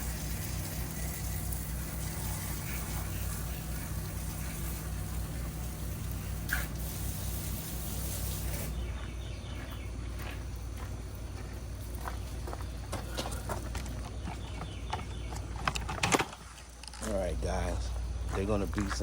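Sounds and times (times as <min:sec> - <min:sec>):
water spraying from hose: 0:00.0 - 0:08.8
wash pump humming: 0:00.0 - 0:19.0.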